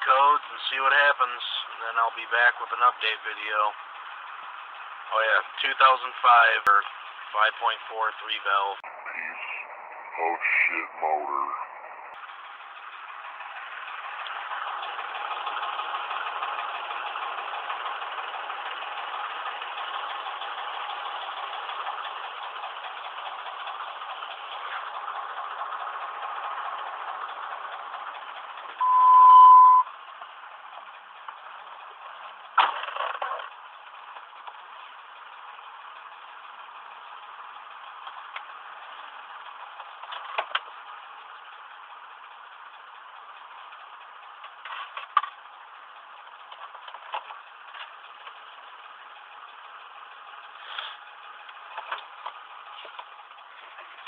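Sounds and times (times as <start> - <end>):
engine idling roughly: 0.0 - 9.0, 9.7 - 28.8, 29.8 - 54.0
steady beep: 28.8 - 29.9.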